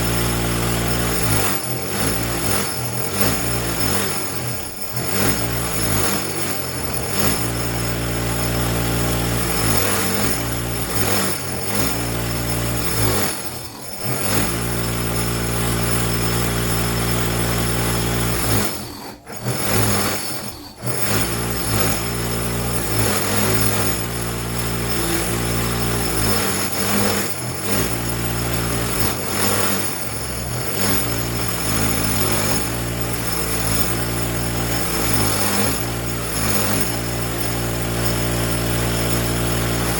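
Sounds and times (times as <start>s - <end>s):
bench grinder wire wheel on metal: 0.0s - 39.9s.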